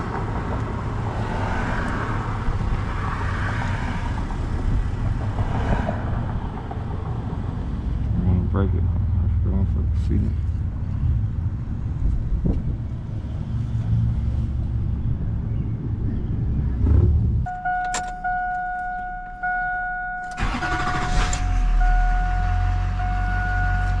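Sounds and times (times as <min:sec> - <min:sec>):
diesel truck engine running: 0:16.7 - 0:24.0
diesel engine idling: 0:17.5 - 0:24.0
electronic warning chime: 0:17.5 - 0:24.0.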